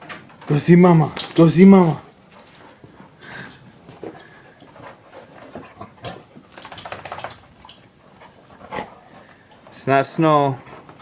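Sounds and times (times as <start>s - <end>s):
small noises: 0.0s - 11.0s
dog panting quietly: 2.0s - 6.6s, 7.4s - 11.0s.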